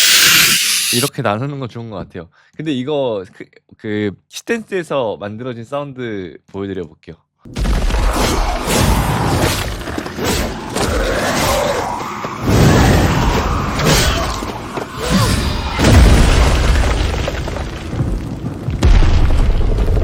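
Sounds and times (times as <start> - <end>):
heavy cinematic booms and crashes: 15.8 - 20.0.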